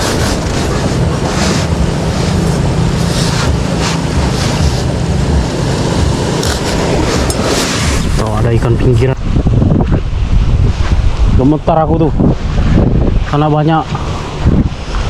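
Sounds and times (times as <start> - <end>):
rhythmic hiss: 0.0 - 9.2
waves washing in: 0.0 - 9.5, 10.1 - 15.0
wind rumbling on microphone: 0.0 - 15.0.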